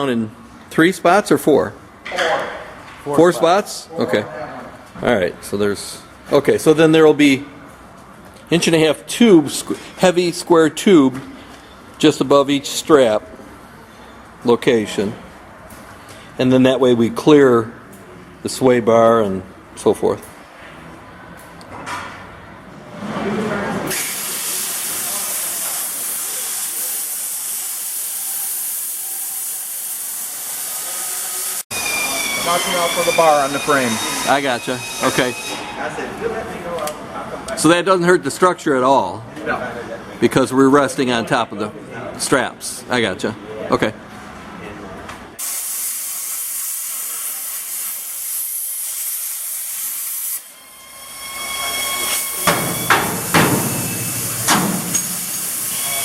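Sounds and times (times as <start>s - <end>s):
plasma cutter hissing: 23.9s - 31.6s, 45.4s - 50.5s, 52.0s - 56.0s
sharp metallic knocks: 51.5s - 56.0s.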